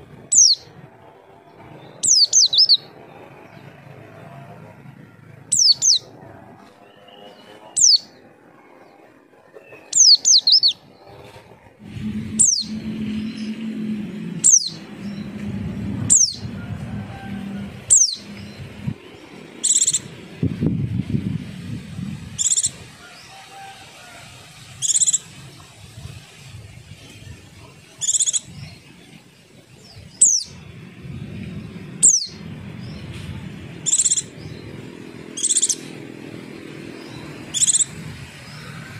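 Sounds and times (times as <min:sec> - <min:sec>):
low background hum: 0:11.4 - 0:23.0
bird calling high falling notes: 0:11.8 - 0:20.2.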